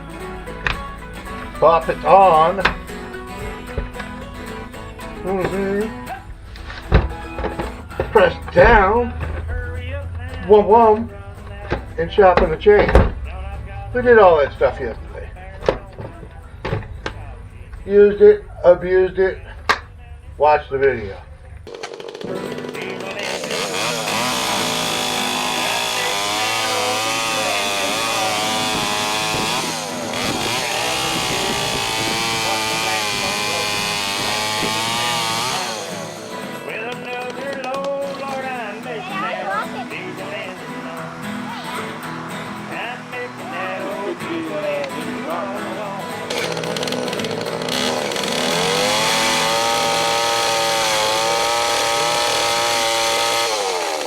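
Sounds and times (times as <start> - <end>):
chainsaw engine running at high revs: 21.7 - 40.5, 43.1 - 54.0.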